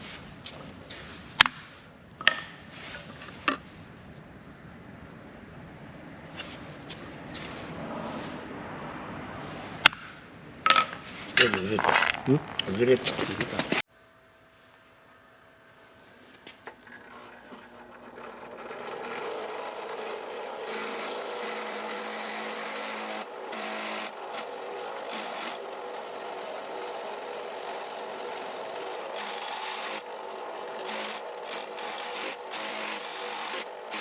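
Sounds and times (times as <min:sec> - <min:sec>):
small power tool running: 0:16.9 - 0:34.0.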